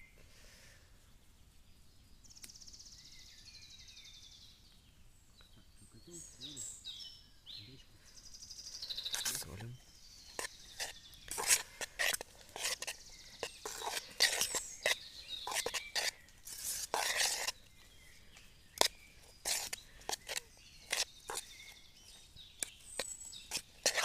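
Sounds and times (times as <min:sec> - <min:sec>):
birds chirping faintly: 0:00.0 - 0:24.0
food scraping and rustling: 0:08.8 - 0:24.0.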